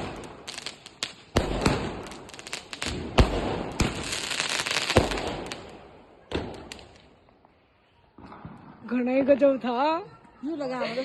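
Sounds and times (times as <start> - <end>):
firework crackling bursts: 0.0 - 7.1
firework bangs: 0.0 - 7.2.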